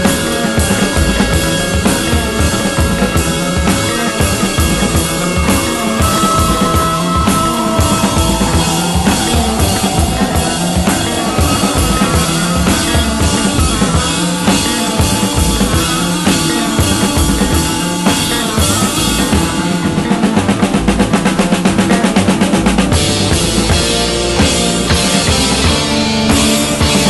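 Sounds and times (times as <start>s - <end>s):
drum roll: 0.0s - 27.0s
rock band music: 0.0s - 27.0s.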